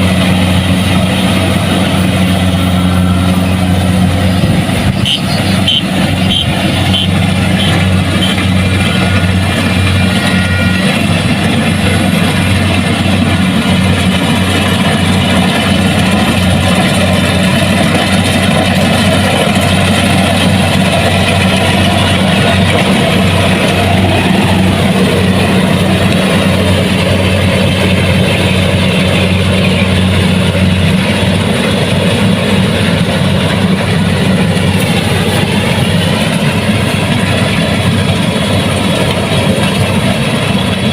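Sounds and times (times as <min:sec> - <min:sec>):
diesel engine droning: 0:00.0 - 0:40.9.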